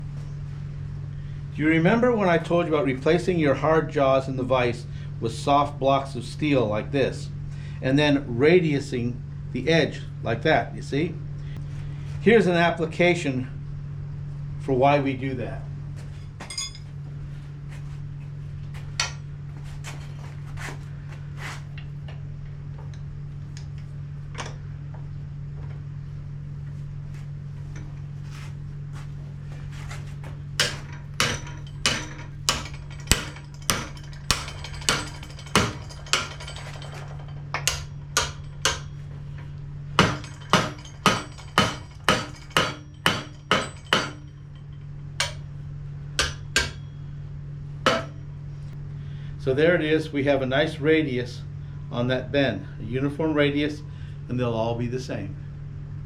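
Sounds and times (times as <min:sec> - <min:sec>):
steady low hum: 0:00.0 - 0:56.0
hammer striking steel bar: 0:30.6 - 0:39.0, 0:40.0 - 0:45.5, 0:46.2 - 0:47.1, 0:47.9 - 0:48.2.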